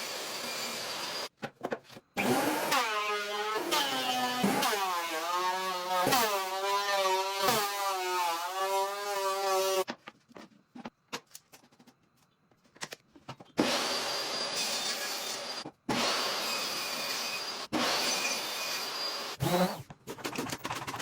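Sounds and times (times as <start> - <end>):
power tool cutting wood: 0.0 - 1.3, 2.2 - 9.8, 13.6 - 19.8.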